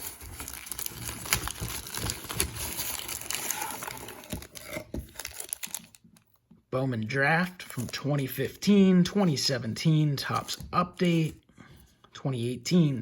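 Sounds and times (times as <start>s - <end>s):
wrappers crinkling and rustling: 0.0s - 6.0s.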